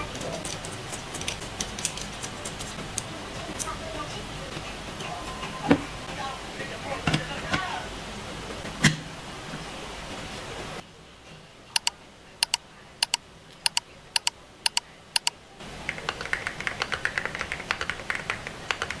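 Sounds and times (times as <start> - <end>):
keyboard keys clicking: 0.1 - 3.7, 11.8 - 15.3.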